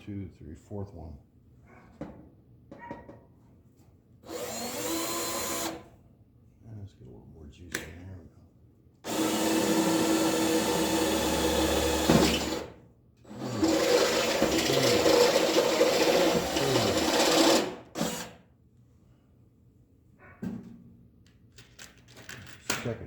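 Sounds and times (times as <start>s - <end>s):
power drill cutting sheet metal: 4.3s - 5.8s, 9.1s - 18.4s.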